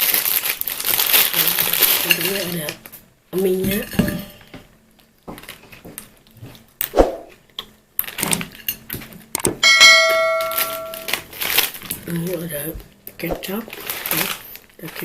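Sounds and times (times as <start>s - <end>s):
handling knocks and rustles: 3.6s - 7.4s, 8.0s - 15.0s
clear ringing ding: 9.6s - 11.2s.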